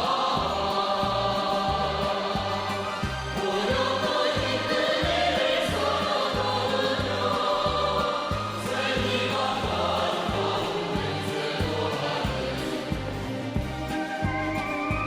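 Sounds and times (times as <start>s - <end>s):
choir singing pop song: 0.0s - 15.0s
pulsing bass line: 0.0s - 15.0s
steady drum beat: 0.0s - 15.0s.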